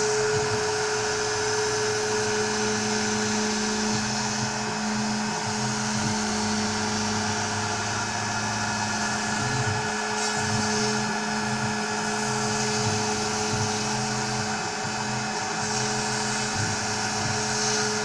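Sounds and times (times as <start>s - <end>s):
router spindle motor cutting foam: 0.0s - 18.0s.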